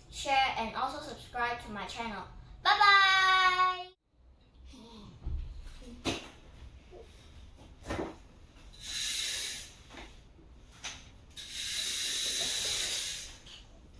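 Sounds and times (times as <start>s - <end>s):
rubbing hissing noise: 8.8s - 10.0s, 11.4s - 13.6s.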